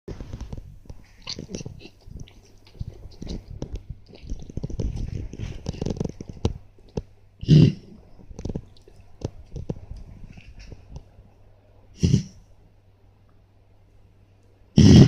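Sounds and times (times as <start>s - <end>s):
pet reverse sneezing: 12.0s - 12.4s.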